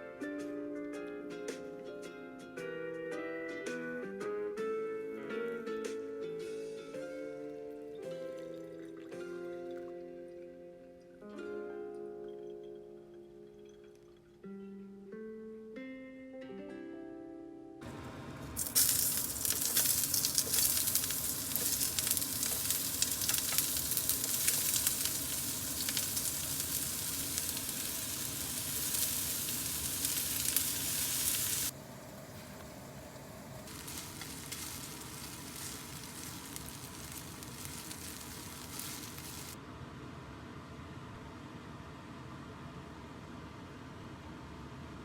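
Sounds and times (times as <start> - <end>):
food sizzling in a pan: 18.6 - 39.6.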